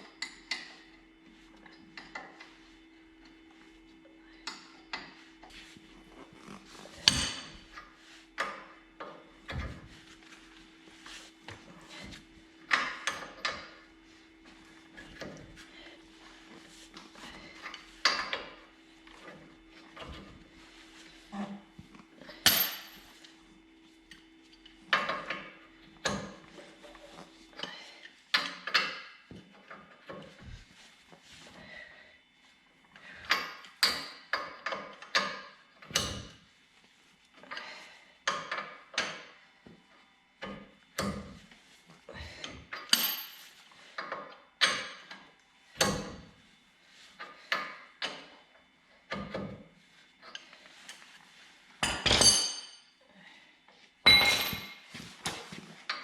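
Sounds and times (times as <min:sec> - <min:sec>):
hand tools striking steel parts: 0:51.8 - 0:52.8, 0:54.1 - 0:54.8.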